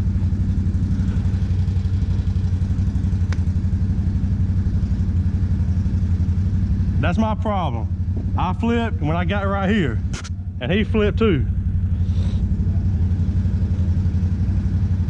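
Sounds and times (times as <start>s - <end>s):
atv engine idling: 0.0s - 15.0s
sharp click: 10.1s - 10.4s.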